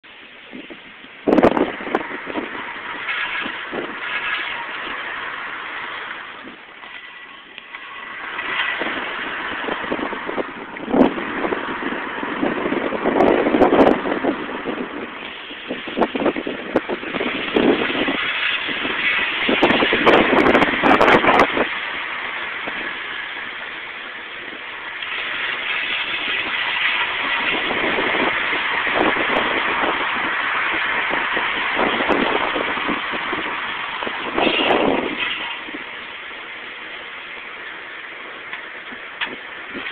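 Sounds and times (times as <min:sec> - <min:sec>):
car wheel grinding noise: 0:00.5 - 0:39.9.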